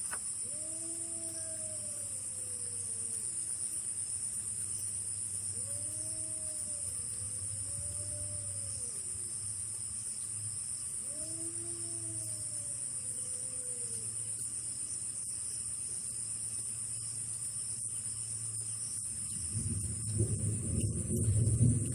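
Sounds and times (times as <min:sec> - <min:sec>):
night insects chirring: 0:00.0 - 0:21.9
low rumbling noise: 0:19.1 - 0:21.9.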